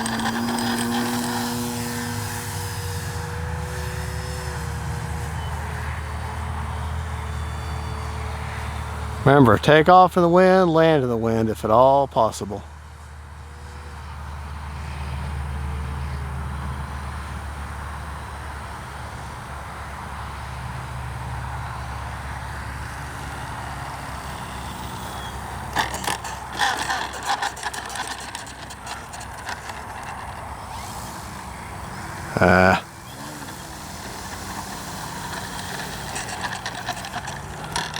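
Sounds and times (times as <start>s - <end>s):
model plane motor hum: 0.0s - 9.2s, 13.2s - 17.4s, 21.4s - 37.9s.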